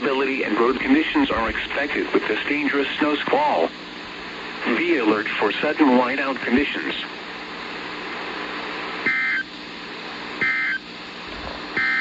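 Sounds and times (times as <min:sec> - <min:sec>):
steady radio hiss: 0:00.0 - 0:12.0
two-tone digital data bursts: 0:11.8 - 0:12.0.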